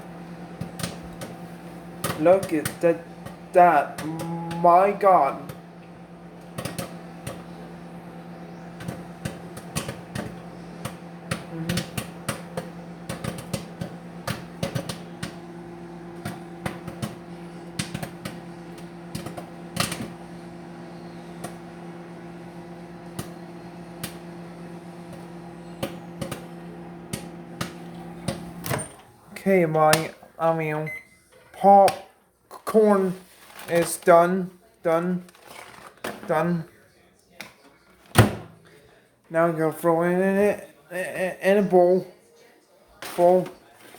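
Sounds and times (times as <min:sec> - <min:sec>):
popcorn popping: 0:00.0 - 0:30.2, 0:35.0 - 0:36.6
microwave oven hum: 0:00.0 - 0:31.4.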